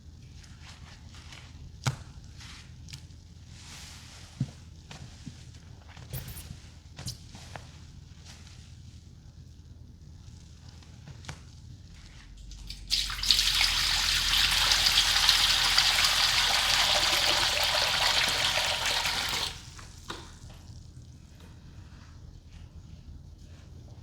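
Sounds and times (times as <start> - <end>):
water pouring into container: 12.7 - 20.3.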